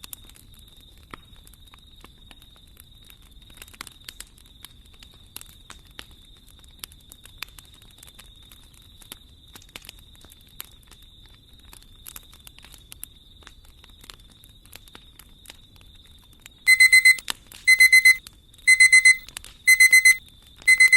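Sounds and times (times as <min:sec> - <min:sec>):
alarm clock beeping: 0:16.7 - 0:20.9.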